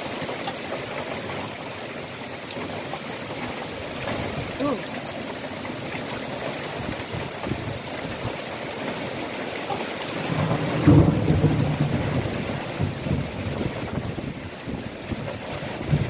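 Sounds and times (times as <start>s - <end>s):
heavy rain: 0.0s - 16.0s
thunder rumble: 10.2s - 16.0s.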